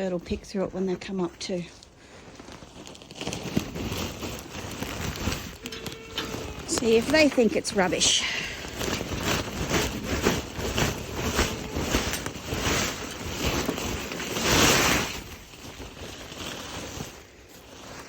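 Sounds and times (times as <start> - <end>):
dry hay rustling and crackling: 0.0 - 18.0.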